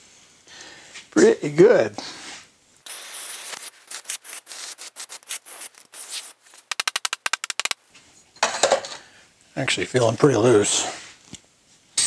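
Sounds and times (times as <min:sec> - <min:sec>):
hands scraping sand mould: 0:02.3 - 0:07.8
quick clicks: 0:04.8 - 0:07.8.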